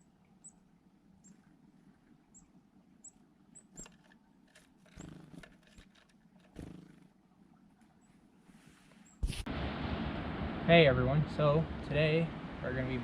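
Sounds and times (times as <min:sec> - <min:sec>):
small animal chirping: 0:02.3 - 0:04.0, 0:04.9 - 0:05.8, 0:06.6 - 0:07.1
rustling: 0:03.6 - 0:09.5.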